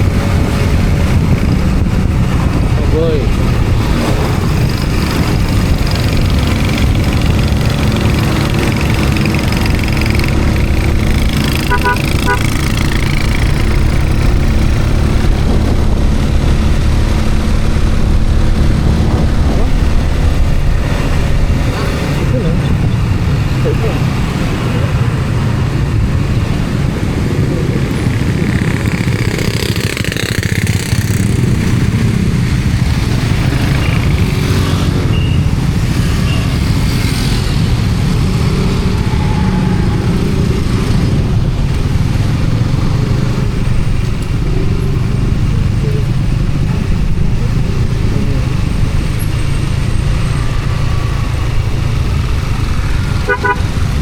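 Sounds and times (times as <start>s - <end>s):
vehicle rumbling on road: 0.0s - 54.0s.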